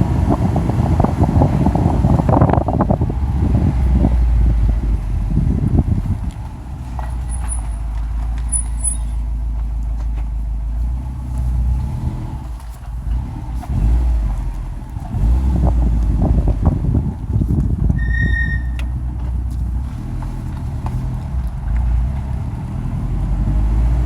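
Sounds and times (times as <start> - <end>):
car engine and tyres rumbling: 0.0 - 24.0
faint high squeaks: 7.2 - 9.3, 18.0 - 19.0.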